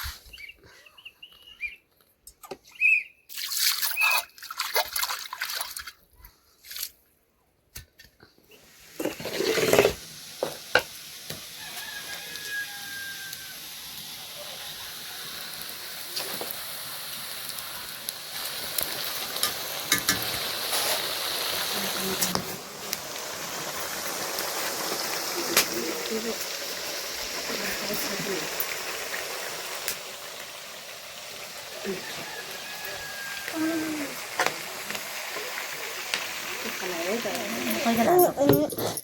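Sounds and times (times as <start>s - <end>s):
running water rushing: 13.8s - 38.1s.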